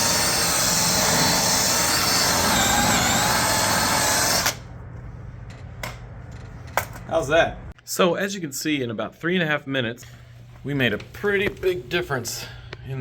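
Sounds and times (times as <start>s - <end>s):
electric drill polishing metal: 0.0s - 4.6s.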